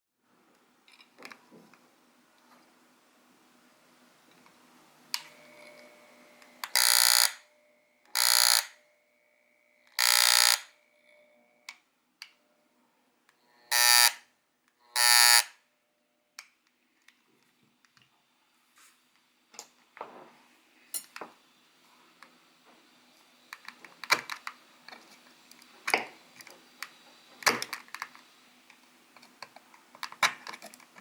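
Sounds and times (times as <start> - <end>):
electric massager buzzing: 5.2 - 11.7, 13.5 - 15.6.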